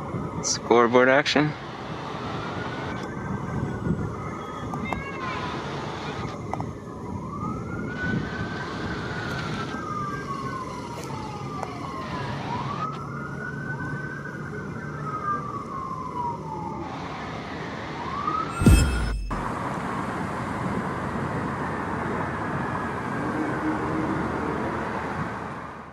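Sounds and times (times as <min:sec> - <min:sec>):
traffic noise: 0:00.0 - 0:25.9
emergency siren wailing: 0:06.3 - 0:19.4
sharp thump: 0:18.5 - 0:19.6.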